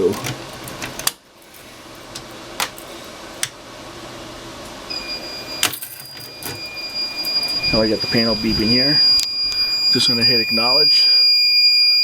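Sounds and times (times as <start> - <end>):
alarm panel high-pitched tone: 4.9 - 12.0.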